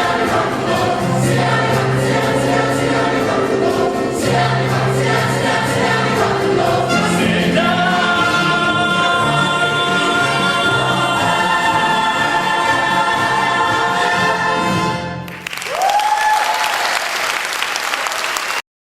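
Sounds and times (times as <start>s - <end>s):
chorus singing with instruments: 0.0s - 15.2s
audience applause: 15.3s - 18.6s
person cheering: 15.6s - 17.1s.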